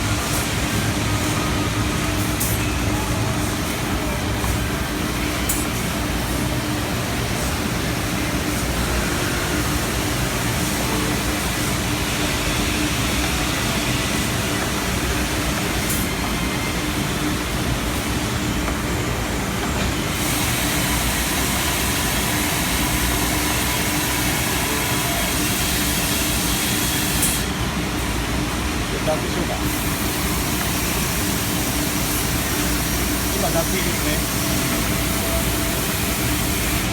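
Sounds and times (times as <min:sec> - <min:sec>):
vacuum pump running: 0:00.0 - 0:36.9.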